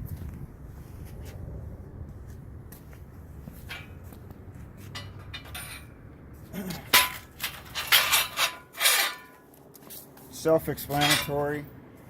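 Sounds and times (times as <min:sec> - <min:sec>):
metal parts clanking and rattling: 0:03.6 - 0:04.0, 0:04.9 - 0:09.6, 0:10.8 - 0:11.6.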